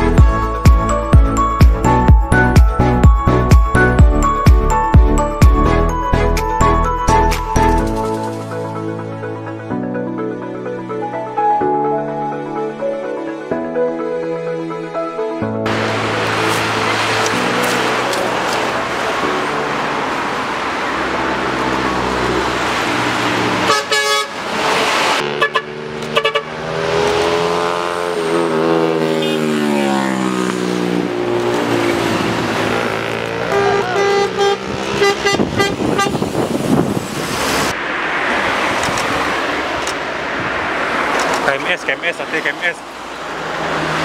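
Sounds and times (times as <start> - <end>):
engine and tyre noise: 0.0 - 44.0
multi-tone bus horns: 15.7 - 30.4, 31.2 - 36.6.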